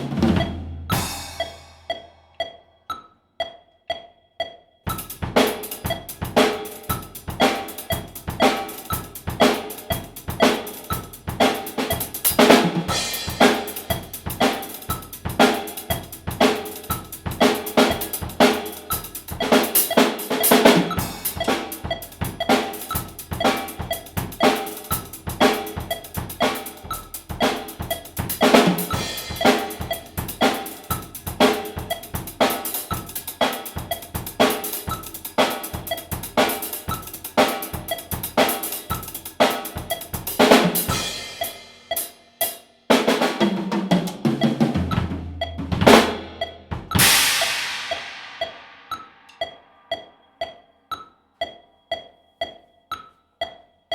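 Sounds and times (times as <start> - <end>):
snare and bass drum strokes: 0.0 - 2.0, 4.9 - 49.3
cymbal crashes: 47.0 - 48.9.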